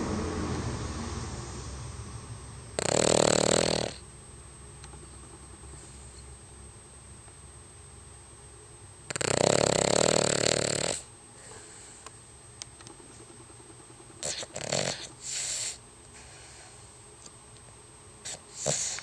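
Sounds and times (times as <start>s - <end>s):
dog snoring: 2.8s - 4.0s, 5.0s - 6.3s, 9.0s - 11.9s, 14.1s - 16.8s, 18.2s - 19.0s.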